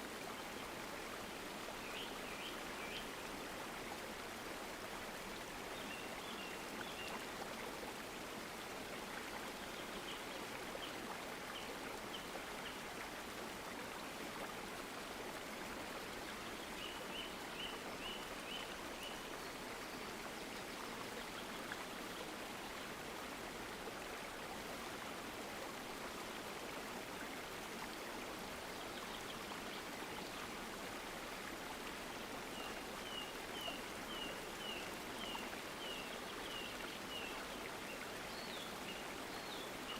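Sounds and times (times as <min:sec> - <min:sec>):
flowing stream: 0:00.0 - 0:39.9.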